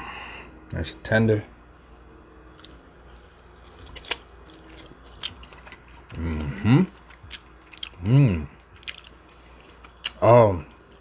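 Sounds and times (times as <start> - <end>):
chewing fried chicken: 2.5 - 11.0
rising hummed vocal sound: 8.0 - 8.6.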